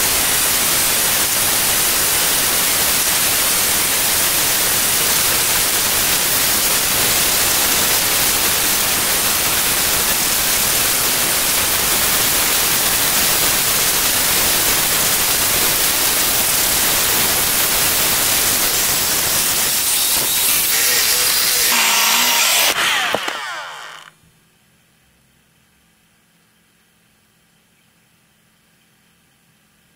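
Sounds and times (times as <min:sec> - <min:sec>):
robot vacuum whirring: 0:18.8 - 0:24.1.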